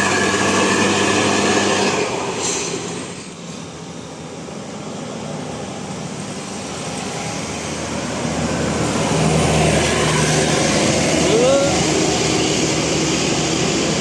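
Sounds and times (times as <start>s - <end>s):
bus approaching: 0.0s - 14.0s
low engine hum: 3.5s - 14.0s.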